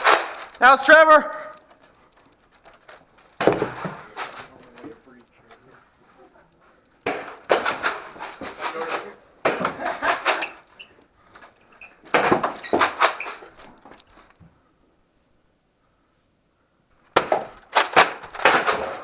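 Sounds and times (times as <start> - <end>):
foam balls hitting walls: 0.0 - 1.0, 2.8 - 5.0, 7.0 - 14.5, 17.0 - 19.0.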